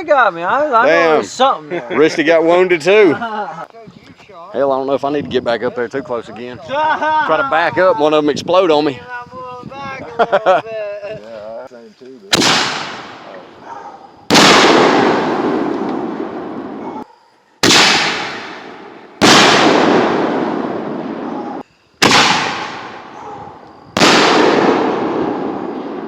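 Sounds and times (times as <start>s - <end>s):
fireworks exploding: 12.3s - 13.6s, 14.2s - 16.9s, 17.6s - 26.0s.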